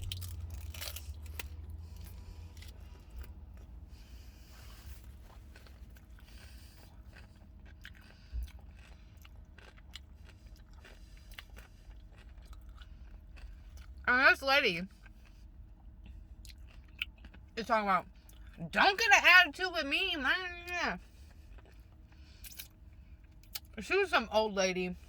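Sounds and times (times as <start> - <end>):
person chewing crunchy food: 0.0 - 14.0, 14.9 - 17.6, 21.0 - 23.8
low steady hum: 0.0 - 25.0.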